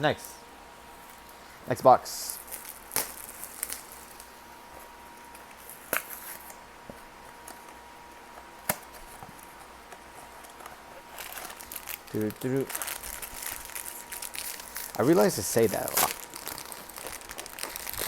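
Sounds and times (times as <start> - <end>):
packaging rustling: 10.2 - 18.0.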